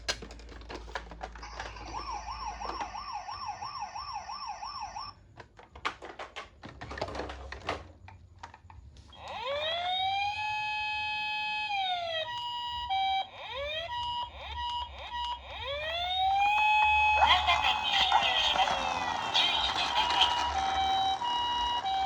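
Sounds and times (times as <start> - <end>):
toy siren: 1.4 - 5.2, 9.1 - 22.0.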